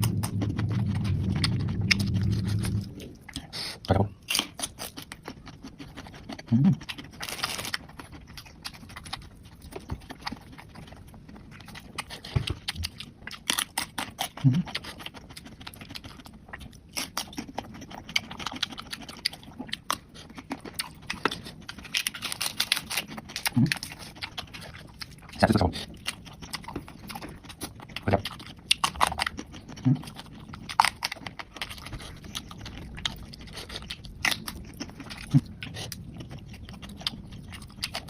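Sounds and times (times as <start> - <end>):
low mouth sounds: 0.0 - 4.2, 6.4 - 6.9, 29.7 - 30.2
person chewing crunchily: 0.0 - 38.0.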